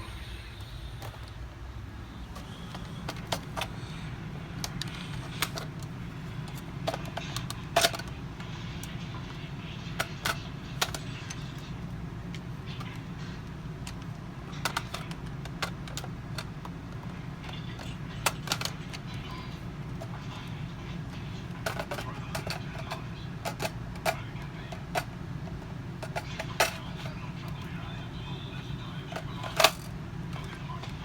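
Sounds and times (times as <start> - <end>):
steady low hum: 0.0 - 31.0
plastic blasters clicking and knocking: 21.6 - 24.2.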